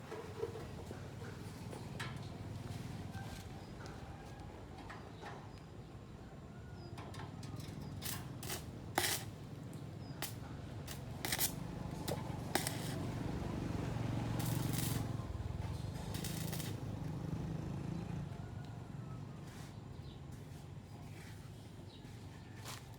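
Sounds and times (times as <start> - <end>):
short hissing bursts: 8.4 - 9.3, 12.4 - 13.1, 14.4 - 15.1.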